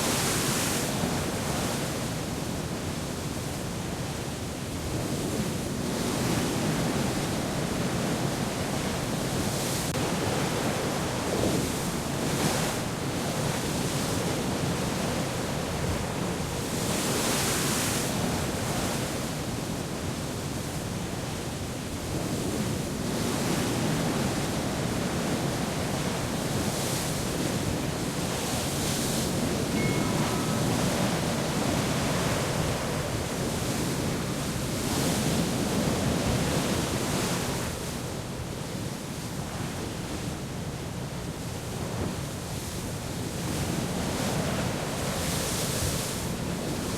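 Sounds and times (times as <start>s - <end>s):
wind: 0.0s - 46.9s
sea waves: 26.1s - 37.5s
faint short tones: 29.7s - 31.8s.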